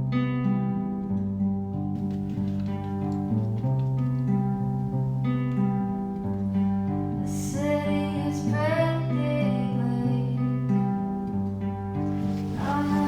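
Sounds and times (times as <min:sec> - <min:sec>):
acoustic guitar and bass music: 0:00.0 - 0:13.0
woman singing: 0:07.1 - 0:11.4, 0:12.1 - 0:13.0.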